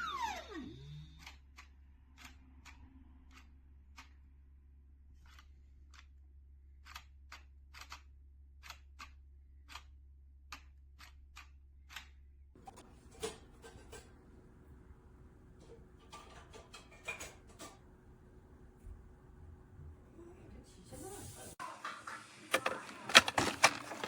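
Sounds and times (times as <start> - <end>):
steady low hum: 12.6 - 21.0.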